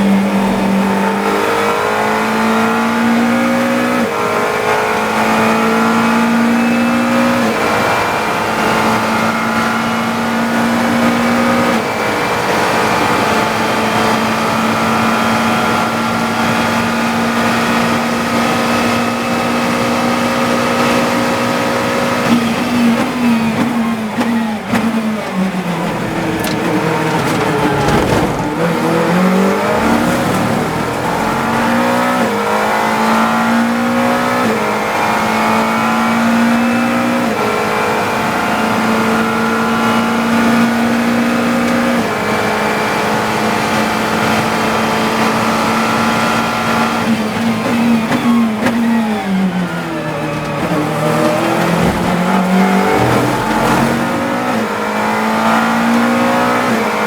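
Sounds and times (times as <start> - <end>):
race car engine revving: 0.0 - 57.0.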